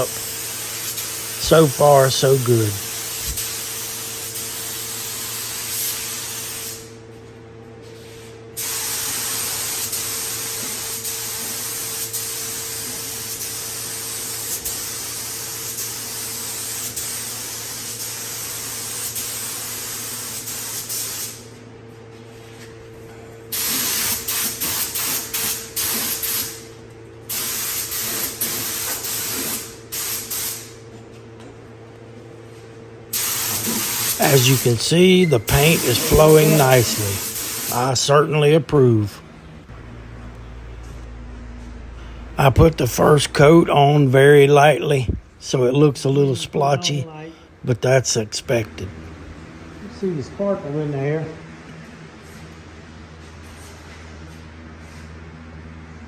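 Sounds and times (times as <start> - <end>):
spray gun hissing: 0.0 - 6.9, 8.6 - 21.4, 23.5 - 26.6, 27.3 - 30.7, 33.1 - 38.2
air compressor humming: 0.0 - 55.1.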